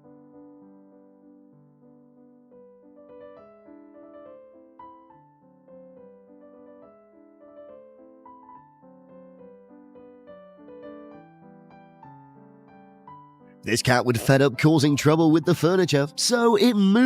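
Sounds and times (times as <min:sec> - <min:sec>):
soft piano music: 0:00.0 - 0:17.0.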